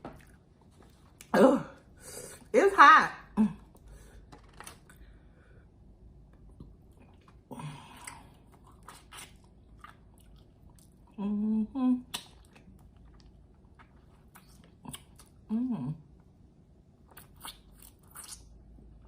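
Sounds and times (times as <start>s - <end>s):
chewing and biting chicken wings: 6.5s - 11.1s, 12.1s - 15.4s
wet mouth clicks: 12.1s - 12.7s, 17.1s - 18.5s.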